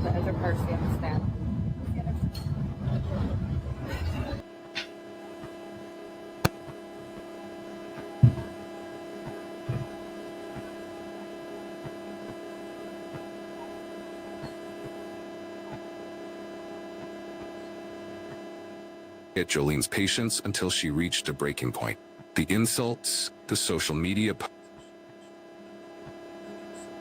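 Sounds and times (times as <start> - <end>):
electrical mains hum: 0.0 - 27.0.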